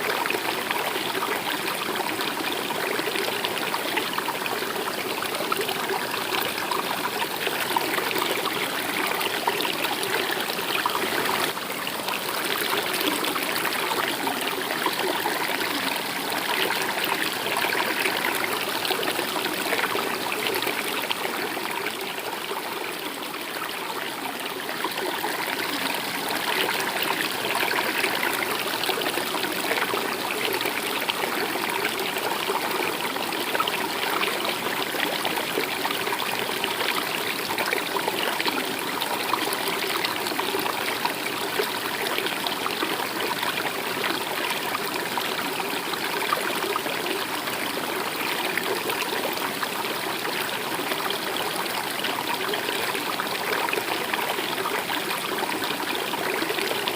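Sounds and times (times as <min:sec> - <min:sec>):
stream water running: 0:00.0 - 0:56.9.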